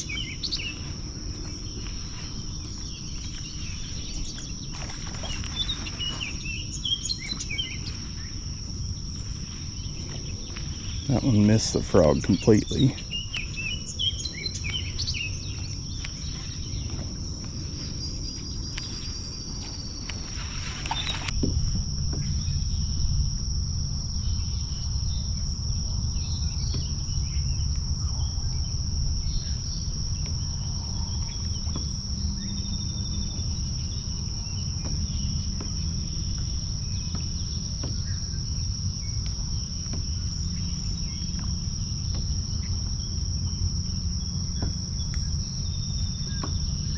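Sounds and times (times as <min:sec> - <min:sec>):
low rumble: 0:00.0 - 0:46.8
insects buzzing: 0:00.0 - 0:46.9.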